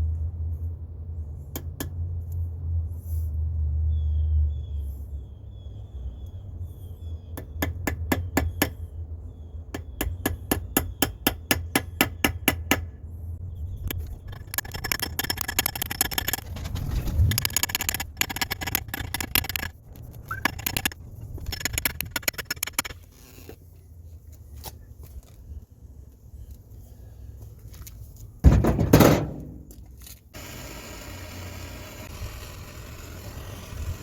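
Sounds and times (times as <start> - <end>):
dense clicking and scraping: 13.7 - 25.6.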